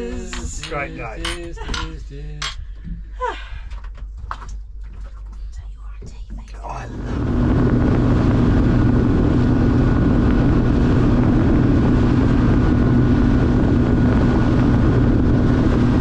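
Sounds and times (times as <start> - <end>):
engine humming steadily: 6.6 - 16.0.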